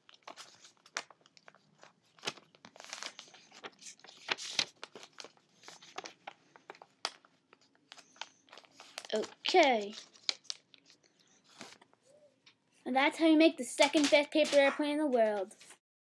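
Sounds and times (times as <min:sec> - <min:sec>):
paper being folded: 0:00.0 - 0:11.9
paper rustling: 0:00.0 - 0:12.0, 0:13.8 - 0:15.8.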